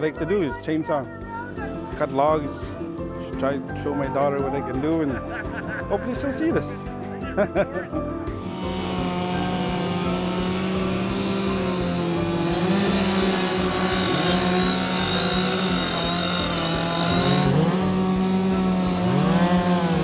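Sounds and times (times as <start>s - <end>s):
chainsaw cutting at high revs: 7.3s - 20.0s.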